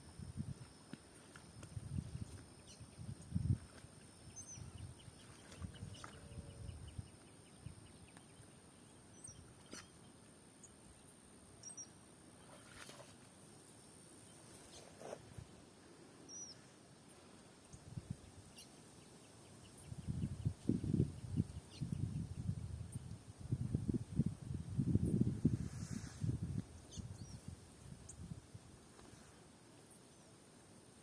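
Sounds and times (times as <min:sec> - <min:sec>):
faint bird chirps: 0:04.3 - 0:13.1, 0:16.2 - 0:16.7.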